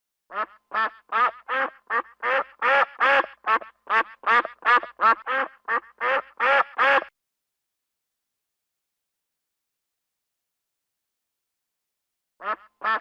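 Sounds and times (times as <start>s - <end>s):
duck quacking: 0.3s - 7.1s, 12.4s - 13.0s.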